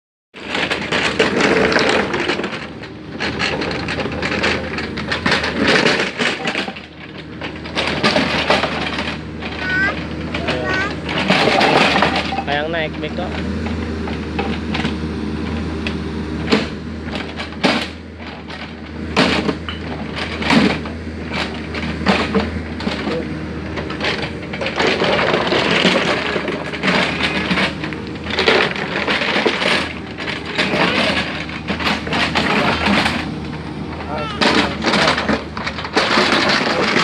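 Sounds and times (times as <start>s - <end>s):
excavator engine humming: 0.4s - 37.0s.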